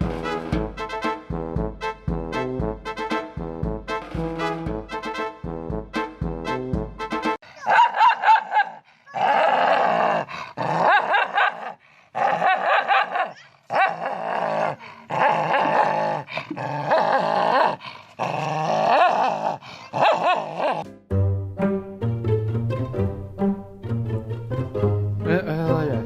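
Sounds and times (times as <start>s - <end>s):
dog making growly calls: 7.6s - 20.8s.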